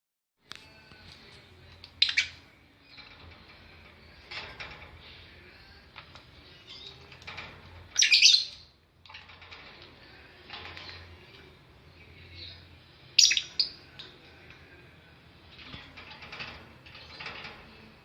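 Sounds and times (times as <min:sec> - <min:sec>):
lovebirds chirping: 0:00.6 - 0:03.1, 0:08.0 - 0:08.8, 0:10.9 - 0:14.5.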